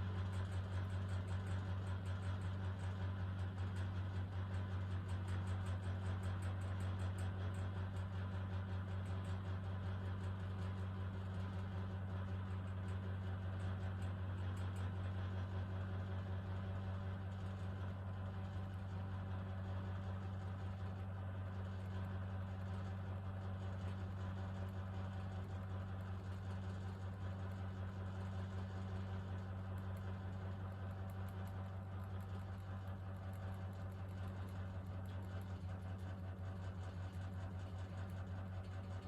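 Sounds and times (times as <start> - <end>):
ceiling fan motor humming: 17.1 - 39.0.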